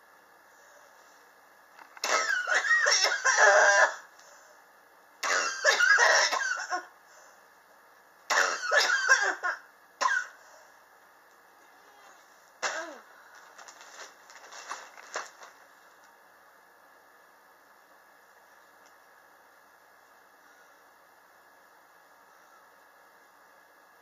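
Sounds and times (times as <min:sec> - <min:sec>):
person coughing with wheezing: 0:02.0 - 0:04.1, 0:05.2 - 0:06.9, 0:08.3 - 0:10.4, 0:12.6 - 0:13.1.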